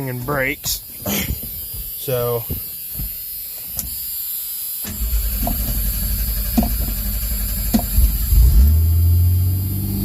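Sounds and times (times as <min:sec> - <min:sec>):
engine cranking on starter: 0:04.8 - 0:10.0
sharp engine pops: 0:06.4 - 0:08.3.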